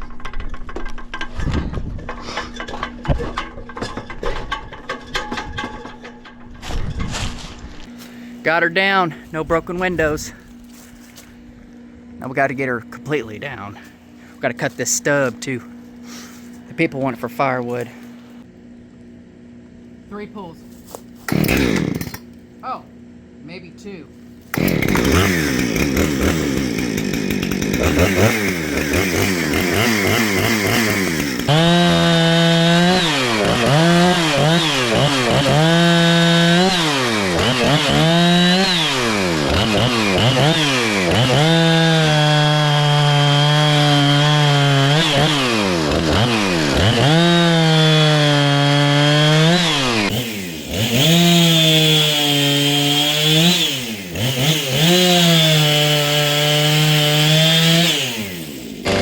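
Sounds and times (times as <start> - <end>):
chainsaw cutting wood: 21.2 - 22.4, 24.5 - 59.0.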